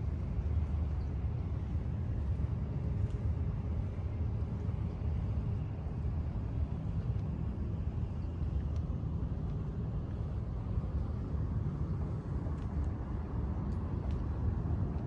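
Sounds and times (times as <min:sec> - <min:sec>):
low city rumble: 0:00.0 - 0:15.0
faint ticks: 0:08.2 - 0:10.3, 0:12.4 - 0:15.0.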